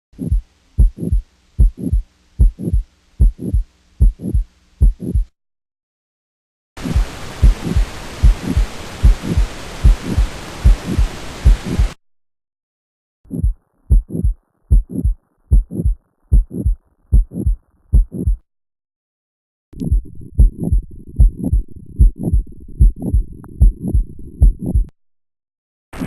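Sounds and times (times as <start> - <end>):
heartbeat lub-dub: 0.2 - 5.3, 6.8 - 12.0, 13.3 - 18.4, 19.8 - 24.9
loud steady hiss: 6.8 - 12.0.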